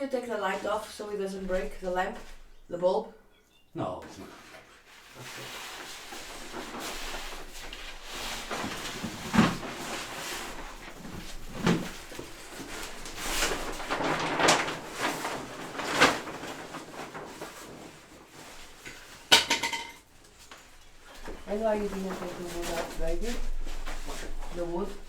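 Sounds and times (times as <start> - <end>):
scraping and crumbling: 5.0 - 25.0.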